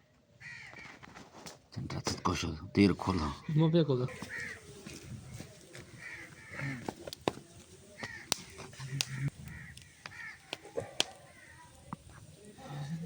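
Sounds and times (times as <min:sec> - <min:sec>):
crows cawing: 0:00.4 - 0:01.0, 0:03.4 - 0:07.2, 0:08.0 - 0:11.8.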